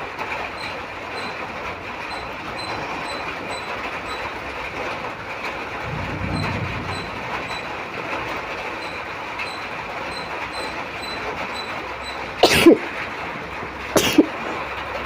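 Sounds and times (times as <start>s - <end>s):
heavy rain hiss: 5.7s - 8.6s
brief low swell: 5.8s - 8.6s.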